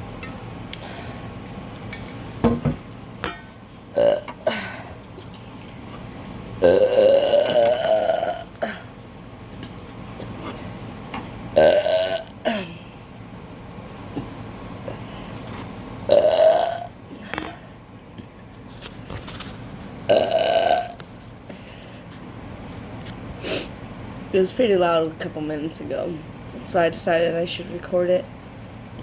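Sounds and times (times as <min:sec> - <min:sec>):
person burping: 0:03.9 - 0:05.0, 0:06.6 - 0:08.9, 0:11.6 - 0:12.8, 0:16.1 - 0:17.5, 0:20.1 - 0:21.0.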